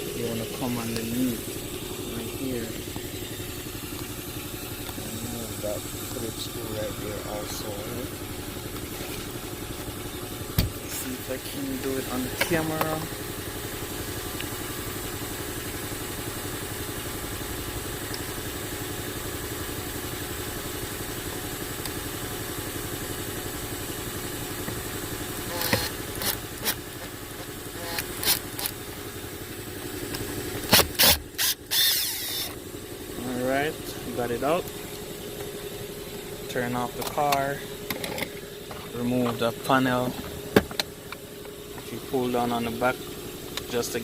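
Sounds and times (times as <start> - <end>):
car engine idling: 0.0 - 44.0
screwdriver clicking and scraping: 25.5 - 27.1, 27.8 - 28.7, 30.7 - 32.6.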